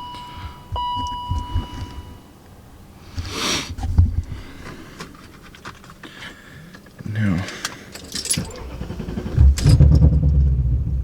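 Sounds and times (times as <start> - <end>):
car dashboard warning tone: 0.0 - 2.4.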